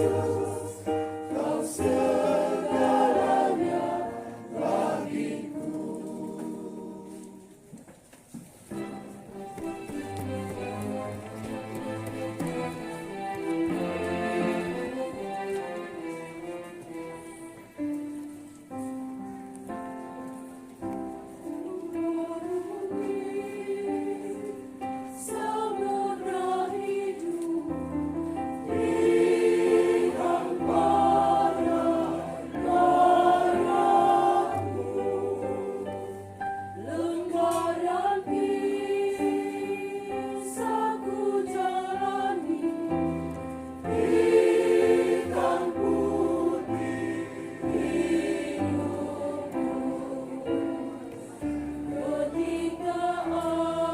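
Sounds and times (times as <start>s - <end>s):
choir singing a hymn: 0.0s - 7.6s, 8.8s - 18.8s, 20.8s - 53.9s.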